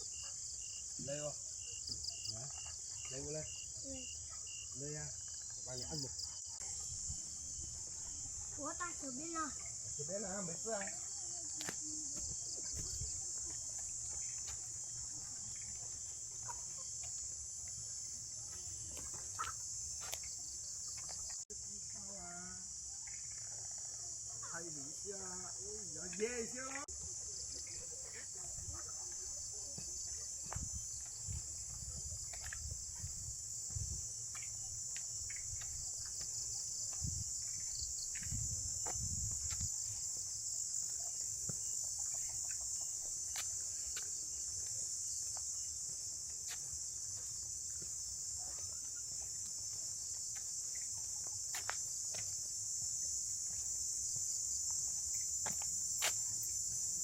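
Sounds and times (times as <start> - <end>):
insect chorus buzzing: 0.0 - 57.0.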